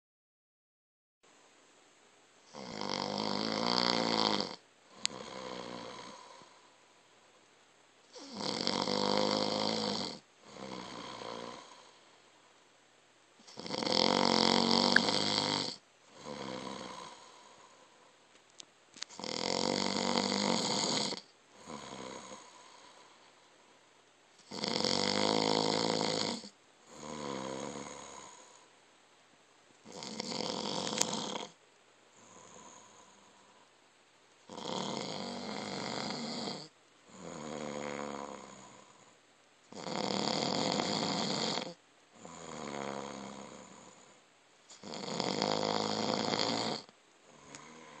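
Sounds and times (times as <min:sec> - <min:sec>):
man snoring: 0:02.5 - 0:06.8, 0:08.1 - 0:12.1, 0:13.4 - 0:18.0, 0:19.1 - 0:23.2, 0:24.4 - 0:28.7, 0:29.8 - 0:31.6, 0:32.2 - 0:33.6, 0:34.5 - 0:48.0.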